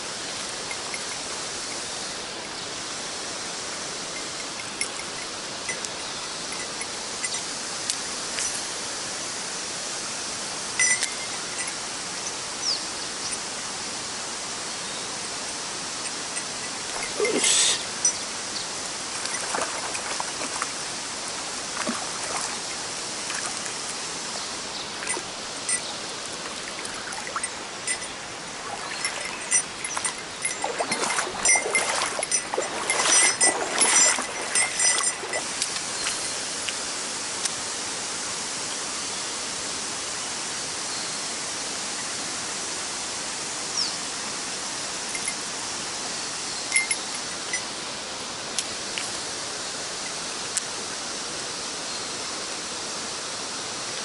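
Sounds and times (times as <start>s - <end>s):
stream water rushing: 0.0s - 54.0s
clatters and splashes: 19.1s - 20.8s, 21.6s - 24.0s, 25.0s - 36.3s.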